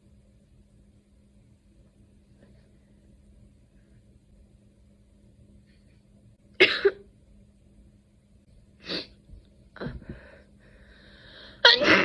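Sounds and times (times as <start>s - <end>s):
person sneezing or coughing: 6.6s - 7.1s, 11.6s - 12.0s.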